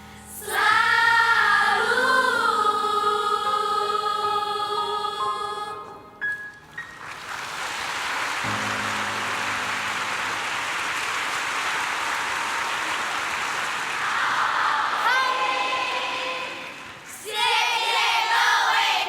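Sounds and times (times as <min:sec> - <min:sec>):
audience applauding: 0:06.8 - 0:17.1.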